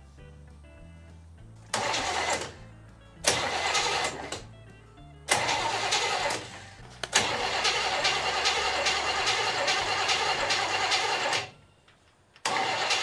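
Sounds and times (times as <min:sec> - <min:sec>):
car engine cranking and starting: 0:01.6 - 0:04.6, 0:05.3 - 0:11.7, 0:12.4 - 0:13.0.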